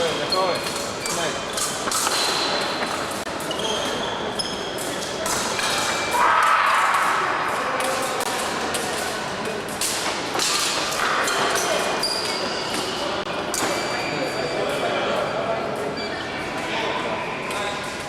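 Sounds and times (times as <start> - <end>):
voices in a hall: 0.0 - 18.0.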